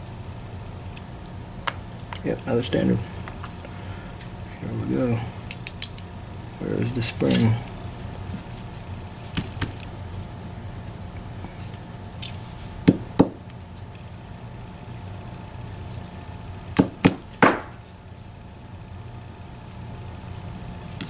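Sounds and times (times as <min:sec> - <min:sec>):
faint steady hum: 0:00.0 - 0:21.0
metal parts knocking and clinking: 0:05.5 - 0:06.1, 0:07.2 - 0:07.7.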